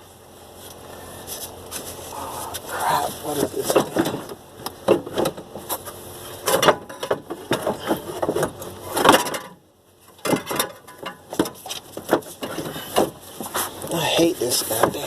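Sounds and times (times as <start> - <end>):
knocking and clattering of parts: 3.3 - 14.0, 14.6 - 15.0.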